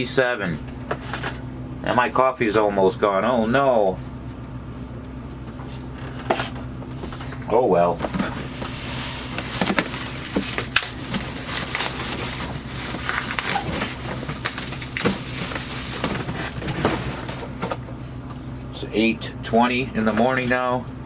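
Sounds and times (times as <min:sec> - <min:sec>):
steady low hum: 0:00.0 - 0:21.0
cardboard rustling and crinkling: 0:05.6 - 0:18.3.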